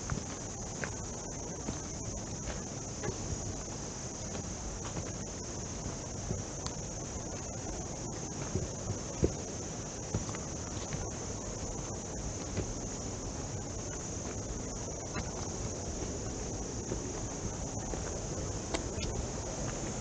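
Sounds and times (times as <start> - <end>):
insects droning: 0.0 - 20.0
low rumbling noise: 0.0 - 20.0.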